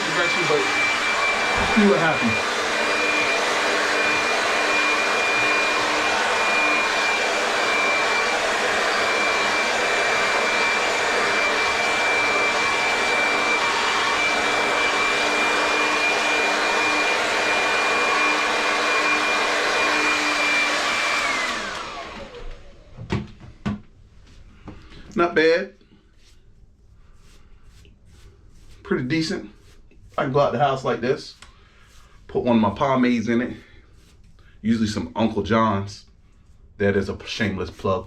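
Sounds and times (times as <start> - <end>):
hair dryer motor whine: 0.0 - 23.3.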